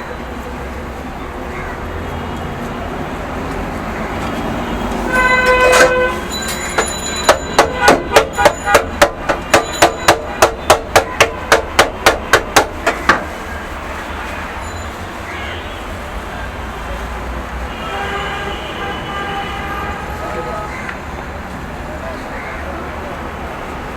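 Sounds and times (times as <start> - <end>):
street traffic rumble: 0.0 - 23.9
metal spatula clanging on griddle: 5.4 - 13.3.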